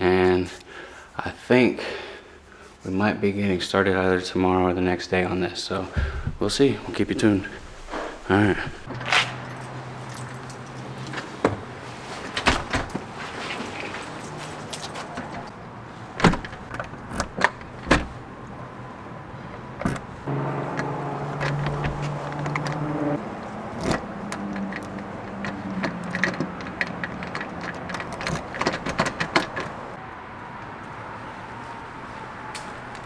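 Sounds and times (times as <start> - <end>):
truck door clunks: 5.9 - 30.0
truck engine running: 6.0 - 30.0
keys jangling: 7.5 - 15.5, 19.6 - 30.0.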